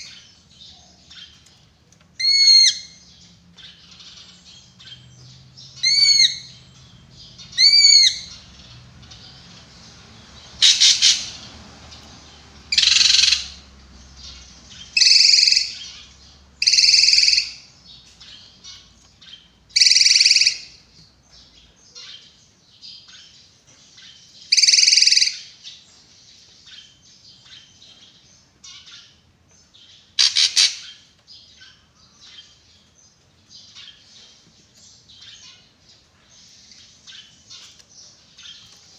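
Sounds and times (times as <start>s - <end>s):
harsh rasping bird calls: 0.0s - 21.0s, 24.0s - 26.0s, 26.7s - 32.9s.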